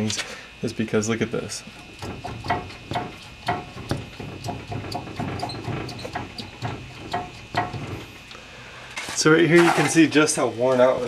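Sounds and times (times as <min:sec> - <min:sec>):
suspension bushings squeaking: 0:01.7 - 0:08.3.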